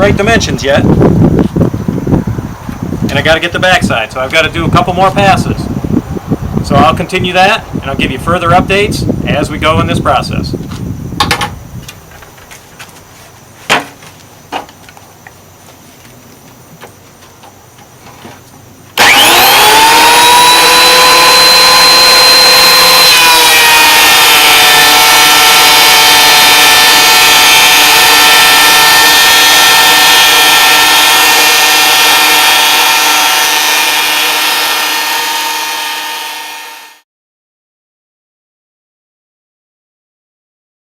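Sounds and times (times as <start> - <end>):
thickness planer whining: 17.4 - 37.0.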